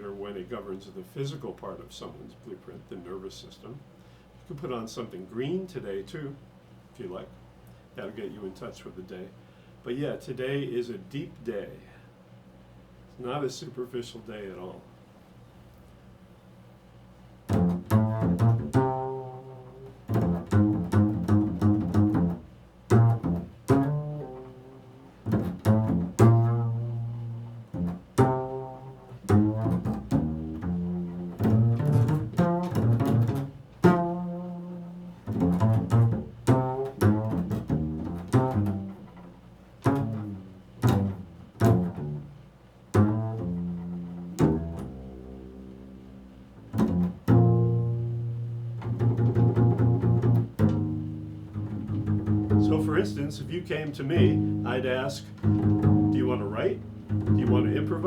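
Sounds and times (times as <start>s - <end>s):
plucked low string notes: 17.5s - 42.3s, 43.0s - 58.0s.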